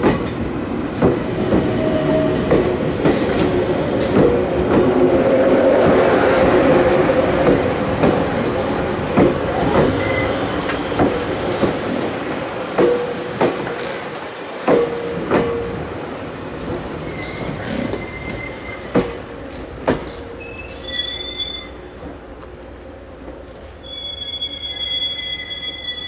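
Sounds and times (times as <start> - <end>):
train running rumble: 0.0 - 20.4
train wheels clacking over rail joints: 0.0 - 20.4
faint squeal tone: 20.4 - 21.9, 23.8 - 26.0.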